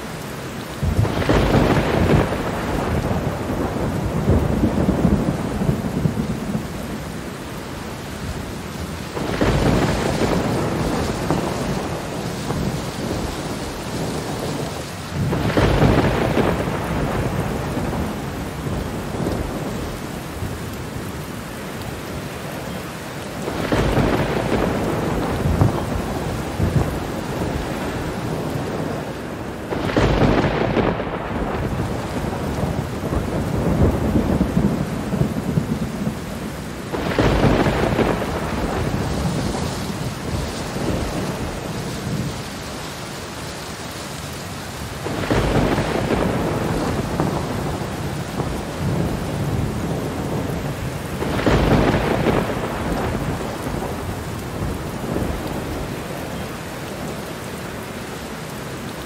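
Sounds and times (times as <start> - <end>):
heavy rain: 0.0 - 59.0
thunder: 0.8 - 6.8, 9.1 - 20.6, 23.4 - 29.1, 29.7 - 42.4, 45.0 - 56.0.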